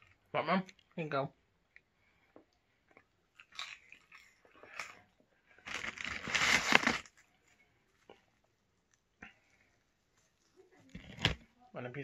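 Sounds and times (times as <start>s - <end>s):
chewing and crunching food: 1.7s - 10.4s.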